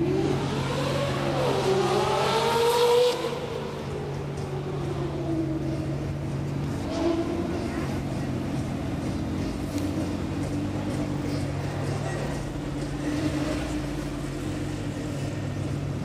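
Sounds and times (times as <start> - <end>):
people talking: 6.6 - 15.8.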